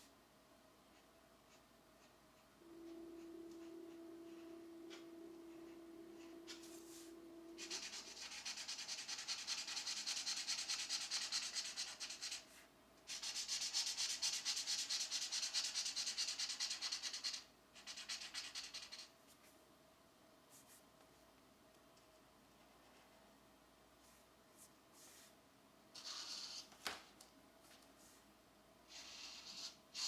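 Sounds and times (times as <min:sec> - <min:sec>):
pencil scratching on paper: 0:00.9 - 0:19.1, 0:26.0 - 0:26.8, 0:28.9 - 0:30.0.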